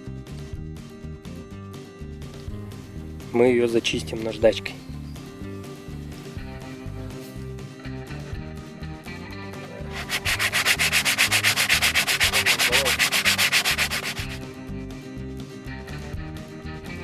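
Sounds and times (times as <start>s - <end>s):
brake pad rubbed on sandpaper: 9.8s - 14.4s.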